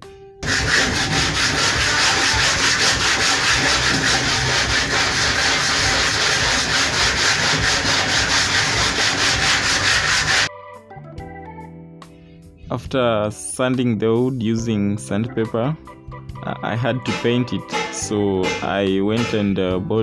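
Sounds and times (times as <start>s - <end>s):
sandpaper rubbing on wood: 0.4s - 10.5s.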